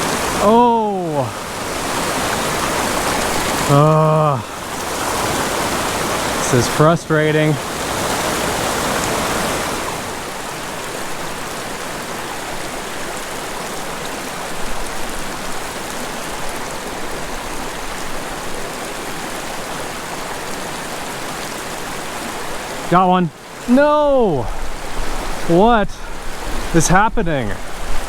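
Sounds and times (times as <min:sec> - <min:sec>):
creek flowing: 0:00.0 - 0:28.0.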